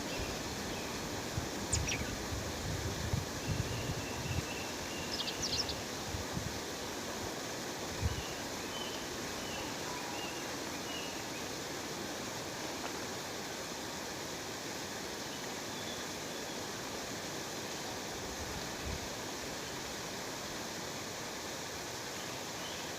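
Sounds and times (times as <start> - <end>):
faint bird chirps: 1.7 - 2.2, 3.5 - 5.8.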